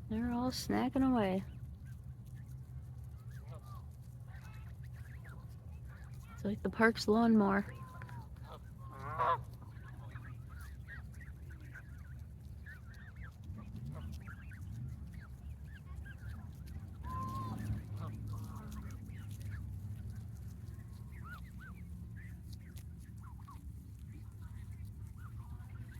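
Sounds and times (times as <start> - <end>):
low background rumble: 0.0 - 25.9
geese calling: 3.1 - 25.9.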